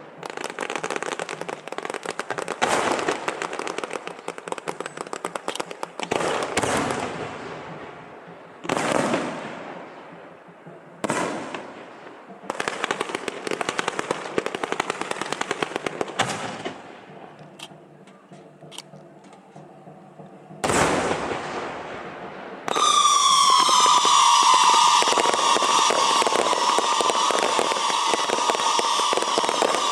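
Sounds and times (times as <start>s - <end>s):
firework bangs with crackle: 0.0s - 10.3s, 11.0s - 17.2s, 20.6s - 29.9s
rapid firework pops: 0.2s - 7.7s, 22.6s - 29.9s
falling firework whistle: 22.6s - 29.9s.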